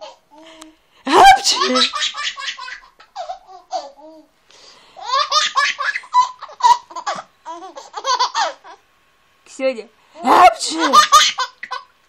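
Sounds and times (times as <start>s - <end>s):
baby laughing: 1.2s - 4.3s, 5.0s - 8.8s, 10.3s - 11.9s.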